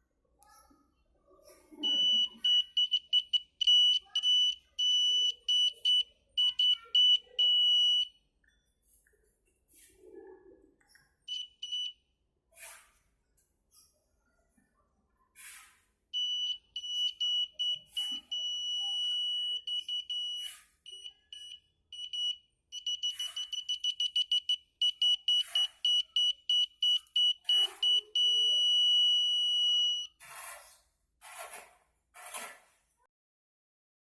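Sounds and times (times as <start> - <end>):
shrill electric buzzer beeping: 1.9 - 8.1, 11.3 - 11.9, 16.2 - 30.1.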